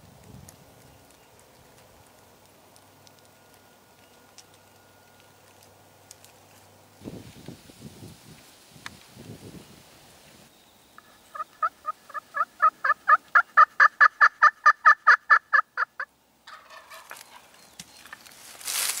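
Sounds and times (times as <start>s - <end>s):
turkey yelps: 11.3s - 16.1s.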